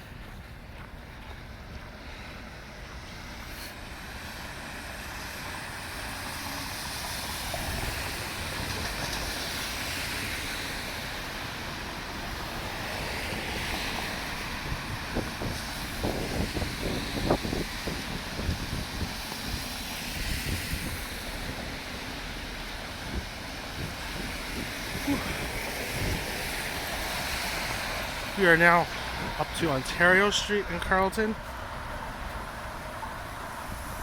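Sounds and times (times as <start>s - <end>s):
storm hiss: 3.4s - 30.4s
wind buffeting microphone: 12.1s - 34.0s.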